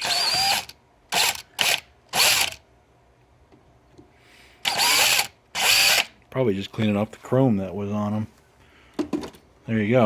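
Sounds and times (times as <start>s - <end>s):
electric drill bursts: 0.0s - 2.6s, 4.6s - 6.2s.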